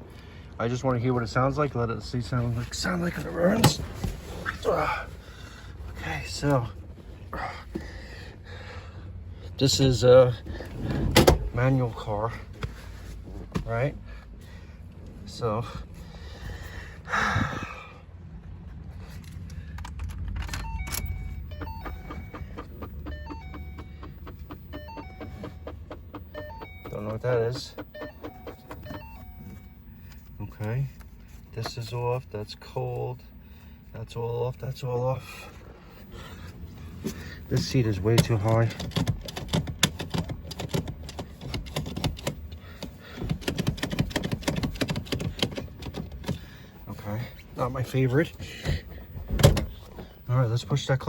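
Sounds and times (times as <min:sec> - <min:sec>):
car keys jangling and clicking: 0:19.1 - 0:31.2, 0:37.6 - 0:46.5
short electronic beeps: 0:20.6 - 0:29.8
car seat adjuster clicks and knocks: 0:38.1 - 0:46.4.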